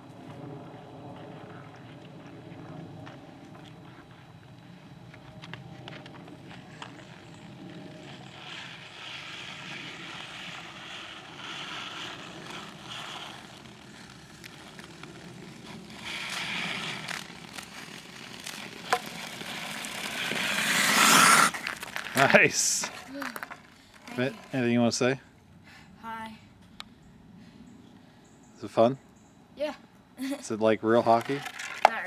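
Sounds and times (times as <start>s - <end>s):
ice skates scraping on ice: 5.1s - 24.8s, 31.0s - 32.0s.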